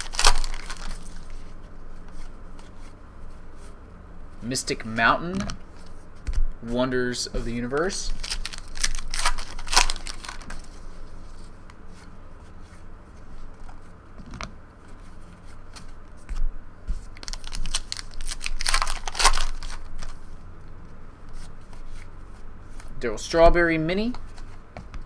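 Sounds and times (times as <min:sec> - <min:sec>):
foil wrappers tearing and crinkling: 0:00.0 - 0:01.5, 0:07.7 - 0:10.8, 0:17.2 - 0:20.2.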